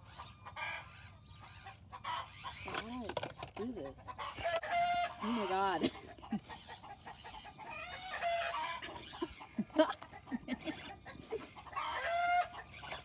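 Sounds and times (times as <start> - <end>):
chickens clucking: 1.5 - 13.0.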